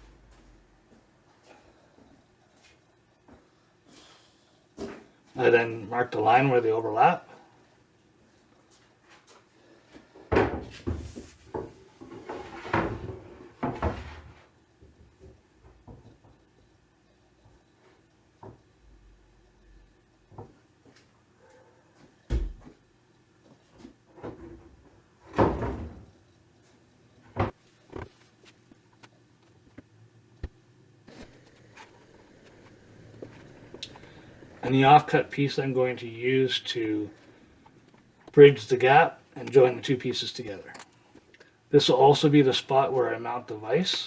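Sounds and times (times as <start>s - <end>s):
wooden knocks and clunks: 22.3s - 22.8s
wood scraping: 31.1s - 35.0s.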